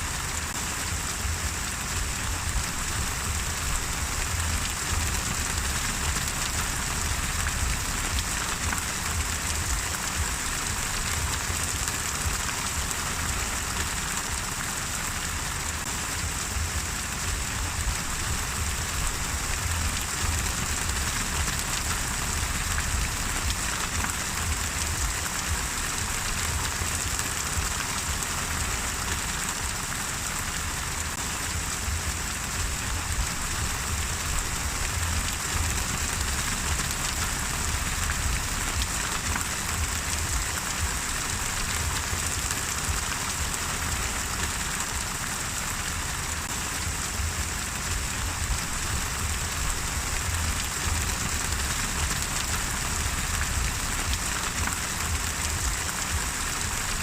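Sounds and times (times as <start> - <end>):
rain pattering: 0.0 - 57.0
low rumble: 0.8 - 12.9, 16.0 - 27.8, 31.2 - 43.1, 46.8 - 56.9.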